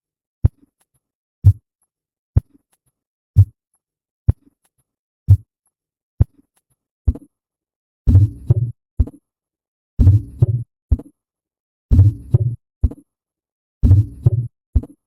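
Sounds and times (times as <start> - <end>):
heartbeat through stethoscope: 8.1 - 9.2, 10.0 - 11.1, 11.9 - 13.0, 13.8 - 14.9.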